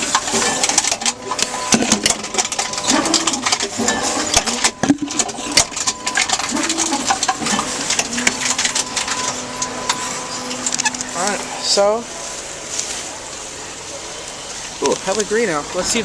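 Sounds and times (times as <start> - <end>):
bottles clattering and clicking: 0.0 - 11.1.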